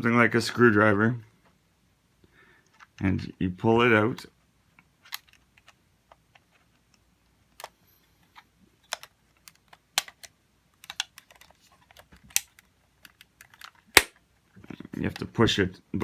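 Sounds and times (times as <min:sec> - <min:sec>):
screwdriver prying plastic clicks: 0:08.9 - 0:11.5.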